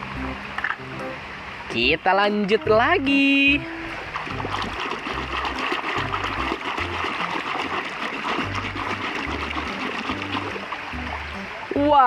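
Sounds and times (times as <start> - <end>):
music with low bass line: 0.0 - 1.2, 2.7 - 7.2, 8.4 - 12.0
river water trickling: 0.0 - 12.0.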